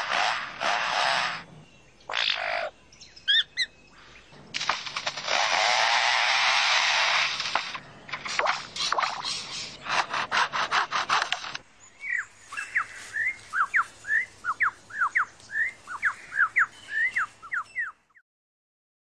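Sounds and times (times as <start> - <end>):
bird imitating chainsaw: 0.0 - 2.7, 4.5 - 11.6
bird whistled notes: 12.1 - 18.0.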